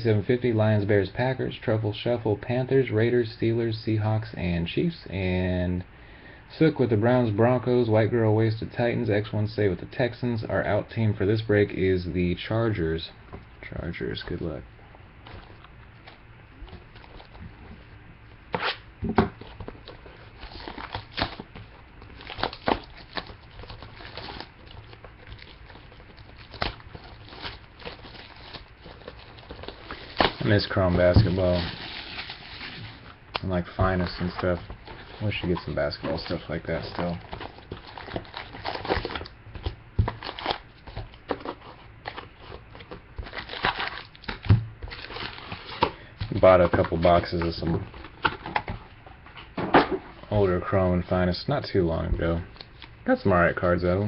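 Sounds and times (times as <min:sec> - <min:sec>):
wrappers rustling and tearing: 0:19.5 - 0:48.6.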